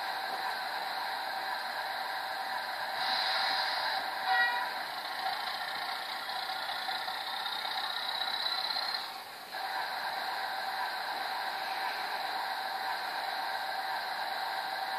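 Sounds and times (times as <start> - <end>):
tinny recorded diesel engine: 0.0 - 14.9
short horn toot: 4.3 - 4.8.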